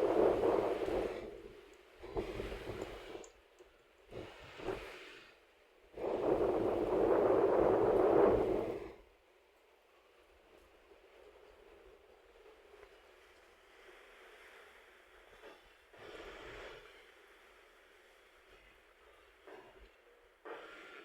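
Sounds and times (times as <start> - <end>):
wind buffeting microphone: 0.0 - 3.3, 6.0 - 9.0
faint hiss: 0.0 - 21.0.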